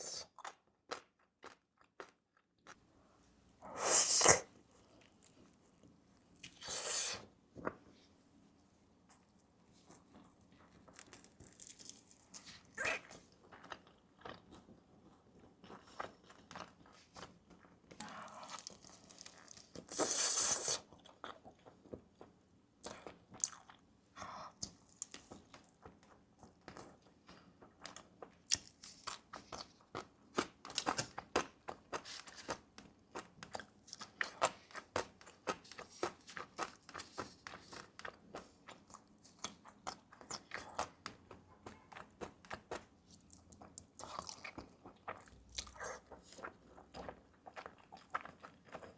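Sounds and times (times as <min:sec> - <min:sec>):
crunchy bites and chewing: 0:10.9 - 0:14.7.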